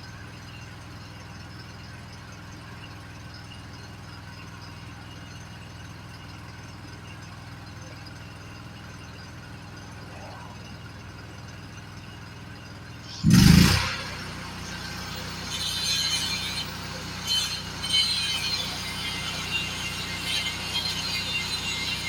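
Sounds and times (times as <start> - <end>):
engine humming: 0.0 - 22.0
welding crackling hiss: 13.2 - 22.0.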